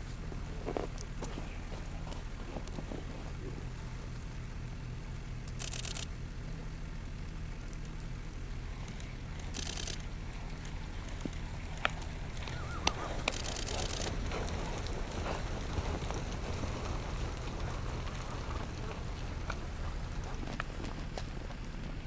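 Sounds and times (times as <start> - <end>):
muffled hoofbeats in snow: 0.0 - 6.0, 6.7 - 22.0
sharp clicks: 5.4 - 6.2, 7.7 - 15.4
wind rumble on microphone: 11.4 - 20.8.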